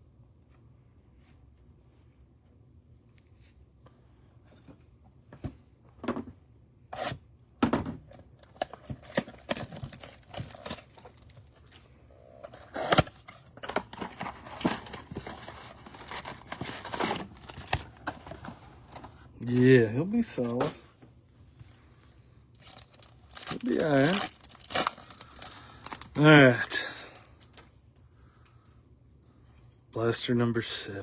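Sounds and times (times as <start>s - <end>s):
wrappers tearing and crinkling: 9.0s - 11.9s, 22.6s - 27.6s.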